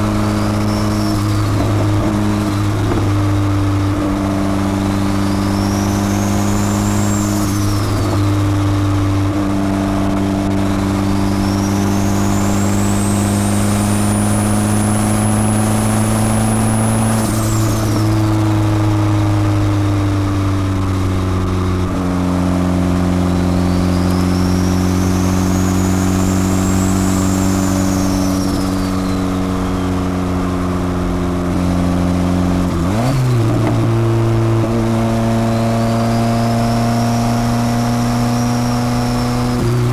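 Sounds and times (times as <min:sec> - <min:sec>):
turbo whistle: 0:00.0 - 0:03.0, 0:04.9 - 0:08.6, 0:10.7 - 0:18.6, 0:23.3 - 0:30.3
car engine running under load: 0:00.0 - 0:39.9.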